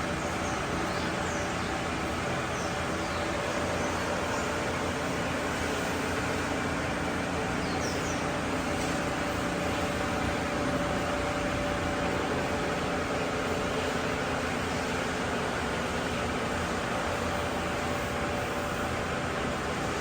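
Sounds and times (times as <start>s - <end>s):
engine running steadily: 0.0s - 20.0s.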